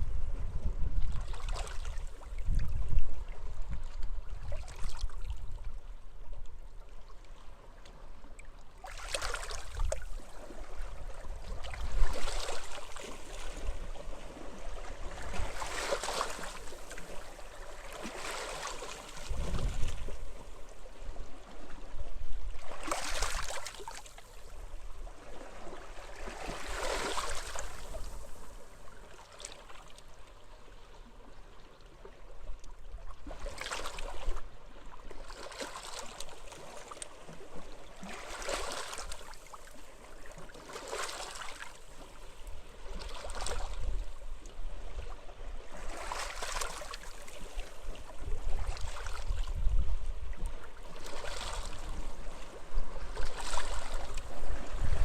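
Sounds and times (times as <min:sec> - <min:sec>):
wind gusts: 0:19.2 - 0:20.4.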